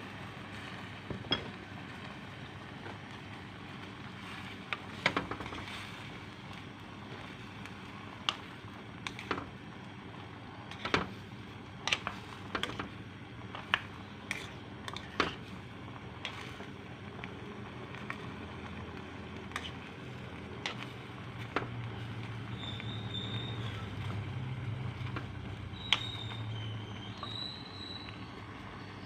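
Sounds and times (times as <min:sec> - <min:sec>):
background hum: 0:00.0 - 0:29.0.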